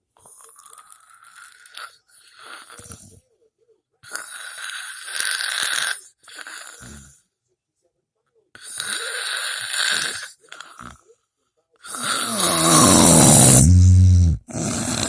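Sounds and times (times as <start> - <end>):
breathy breath: 11.9 - 15.0
person snoring: 11.9 - 15.0.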